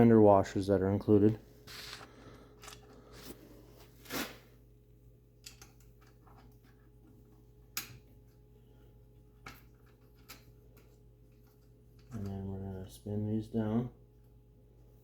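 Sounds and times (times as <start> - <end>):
bolts and washers clinking: 5.4 - 6.8.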